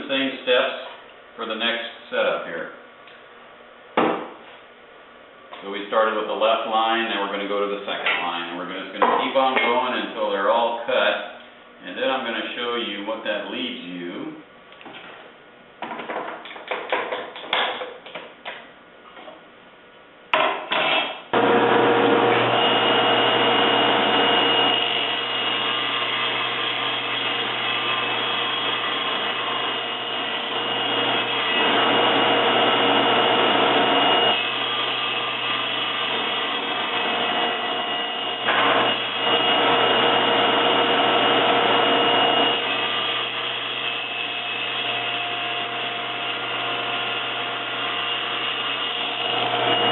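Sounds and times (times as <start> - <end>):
knocks and clicks of wood: 15.8 - 18.6
table saw running: 21.3 - 49.9
saw blade cutting wood: 22.2 - 49.9.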